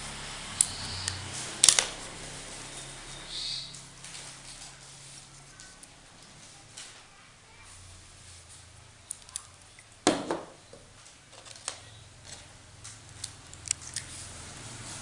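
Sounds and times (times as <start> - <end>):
loud knock: 10.1 - 10.6.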